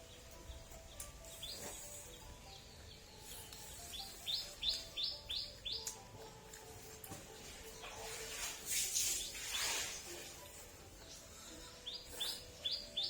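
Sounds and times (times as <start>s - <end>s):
small bird chirping: 0.0s - 6.3s, 9.1s - 13.0s.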